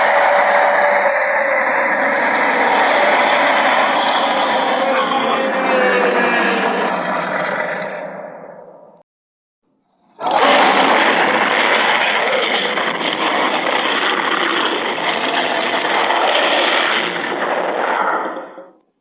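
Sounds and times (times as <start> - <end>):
harsh monster roar: 0.0 - 8.9, 10.2 - 18.8.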